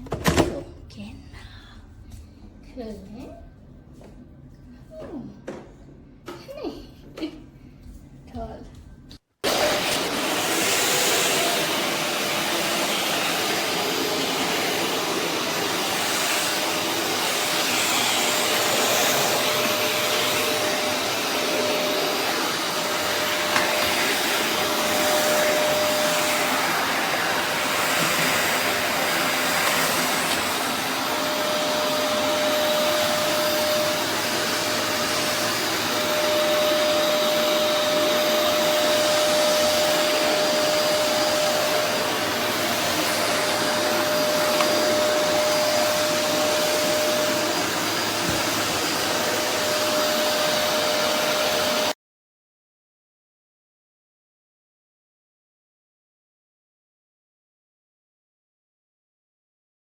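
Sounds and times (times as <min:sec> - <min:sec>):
vacuum cleaner running: 0:09.4 - 0:52.0.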